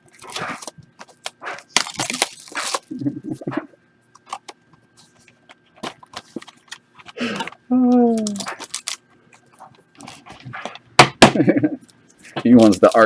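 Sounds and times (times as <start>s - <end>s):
wrappers crinkling and tearing: 0.1s - 3.1s, 7.9s - 9.1s, 12.5s - 13.0s.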